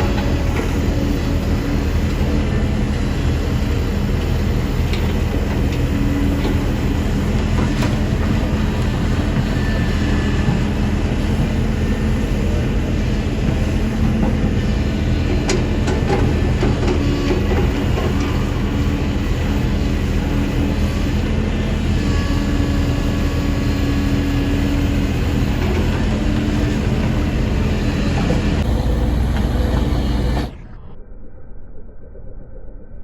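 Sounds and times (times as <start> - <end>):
excavator diesel engine running: 0.0 - 30.9.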